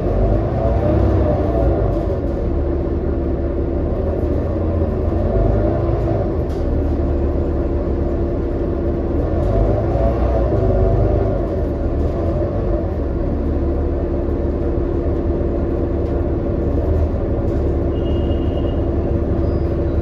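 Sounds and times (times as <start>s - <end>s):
bus engine rumbling: 0.0s - 20.0s.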